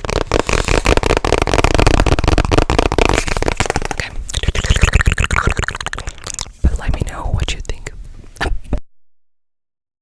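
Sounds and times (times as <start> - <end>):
fast clicking and crackling: 0.0 - 6.2.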